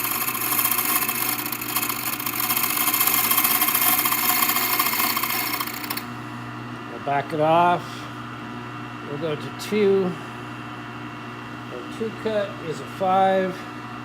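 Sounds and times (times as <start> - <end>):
key cutter grinding: 0.0 - 6.1
motor humming: 0.0 - 6.2.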